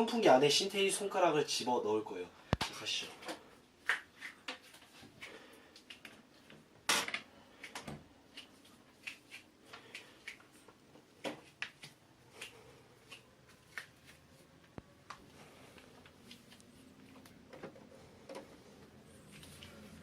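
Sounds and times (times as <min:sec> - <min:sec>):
soft handling clicks and rustles: 0:07.6 - 0:20.0.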